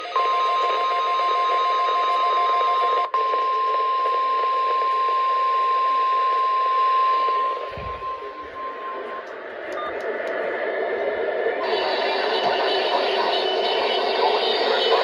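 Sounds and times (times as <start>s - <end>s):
steady warning alarm tone: 0.0s - 15.0s
radio static: 7.0s - 15.0s.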